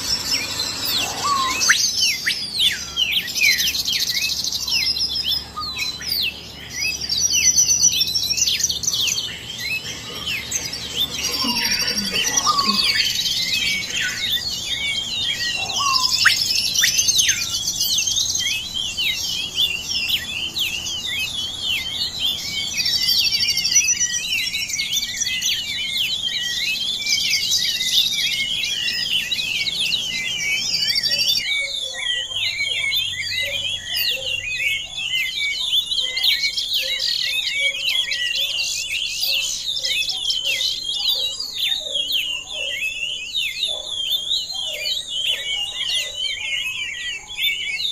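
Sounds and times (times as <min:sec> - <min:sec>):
birds chirping and calling: 0:00.0 - 0:47.9.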